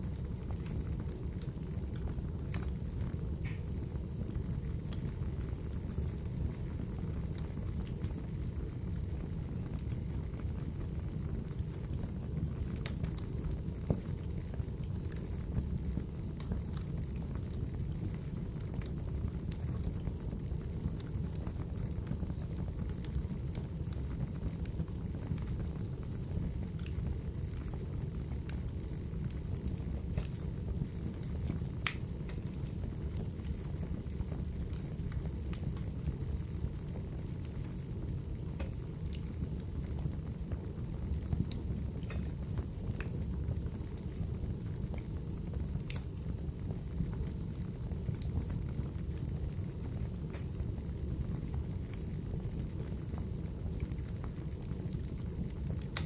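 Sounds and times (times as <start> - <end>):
fire crackling and popping: 0.0 - 56.0
low rumble of flames: 0.0 - 56.0.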